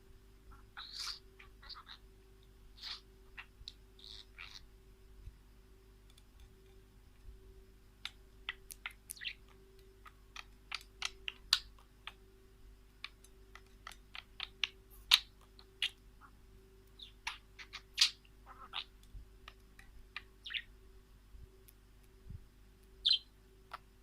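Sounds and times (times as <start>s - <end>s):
birds chirping: 0.5s - 4.9s, 7.4s - 12.4s, 13.0s - 20.8s, 23.0s - 24.0s.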